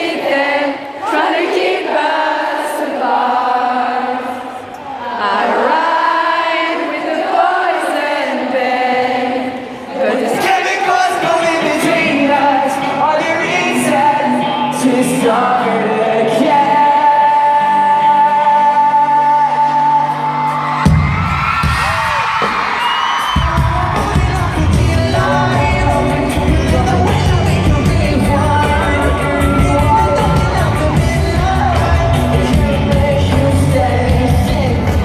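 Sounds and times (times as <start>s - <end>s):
lead vocal singing: 0.0s - 35.0s
live pop-rock band playing: 11.2s - 35.0s
crowd yelling: 20.0s - 35.0s
heavy drums: 20.9s - 35.0s.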